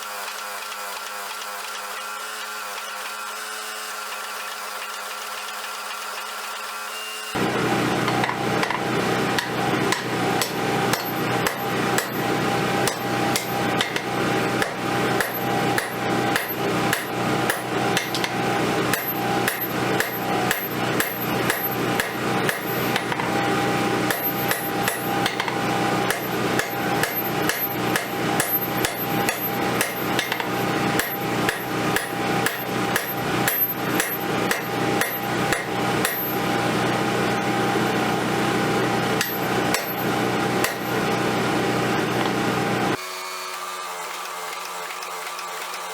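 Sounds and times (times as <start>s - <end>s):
steady hum: 7.4s - 43.0s
hammer striking steel on anvil: 8.0s - 36.5s, 39.2s - 41.1s.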